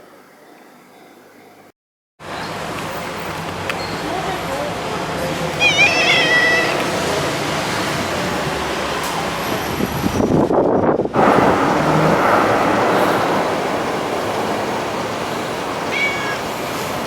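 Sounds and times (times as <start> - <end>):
outdoor traffic noise: 0.0 - 17.0
vehicle passing: 11.2 - 17.0.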